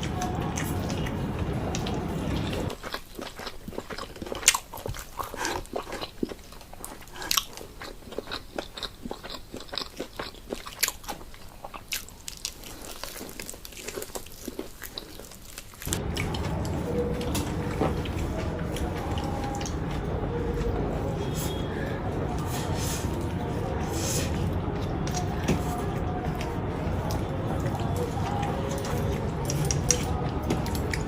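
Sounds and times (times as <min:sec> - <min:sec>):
person chewing crunchy food: 0:00.0 - 0:31.0
steady background sound: 0:15.9 - 0:31.0.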